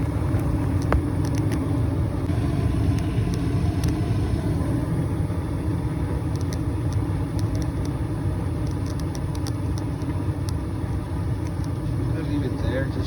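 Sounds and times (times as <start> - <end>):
gas furnace low rumble: 0.0 - 13.0.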